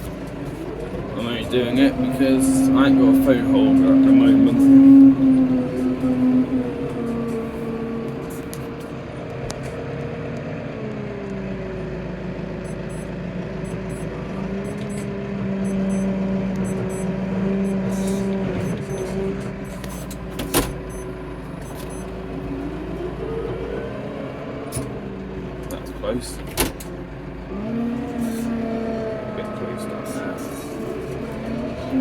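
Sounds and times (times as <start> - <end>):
tractor engine running: 0.0 - 32.0.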